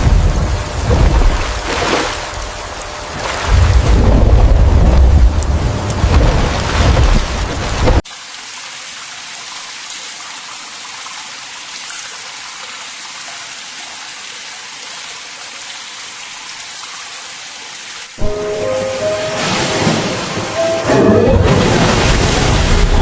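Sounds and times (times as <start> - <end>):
heavy rain: 0.0 - 8.3, 18.1 - 23.0
deep thunder rumble: 3.5 - 8.0.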